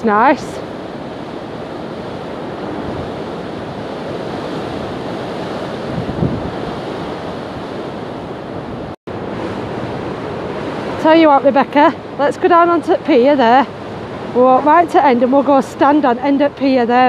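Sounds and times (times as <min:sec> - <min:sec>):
sea surf rushing: 0:00.0 - 0:17.0
wind buffeting microphone: 0:00.0 - 0:17.0.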